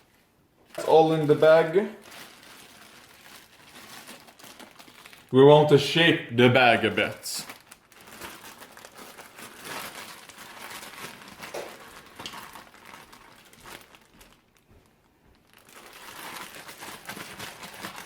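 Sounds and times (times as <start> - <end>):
plastic bag crinkling: 0.0 - 18.0.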